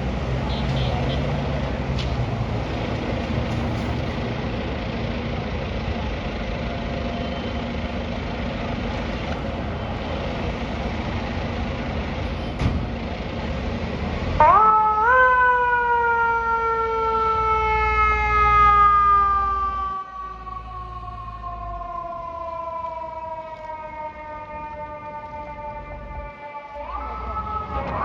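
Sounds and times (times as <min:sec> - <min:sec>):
diesel engine idling: 0:02.9 - 0:14.2.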